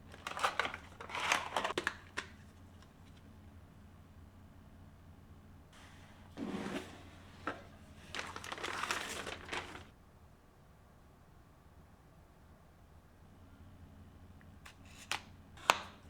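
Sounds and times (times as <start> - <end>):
packaging crinkling and rustling: 0.0 - 2.4, 6.7 - 9.9.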